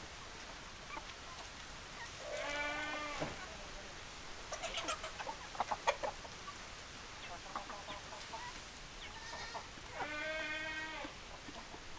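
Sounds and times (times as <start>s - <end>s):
long steady bleat: 2.4s - 3.3s, 9.2s - 11.2s
hens clucking: 4.5s - 11.9s.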